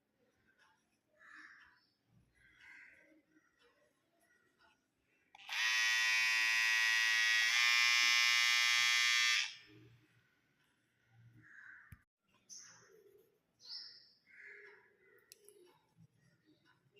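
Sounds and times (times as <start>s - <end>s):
hair trimmer buzzing: 5.4s - 9.7s.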